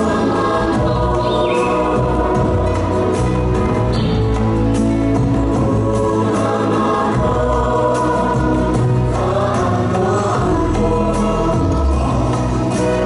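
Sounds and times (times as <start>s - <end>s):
choir singing sustained chords: 0.0s - 13.0s.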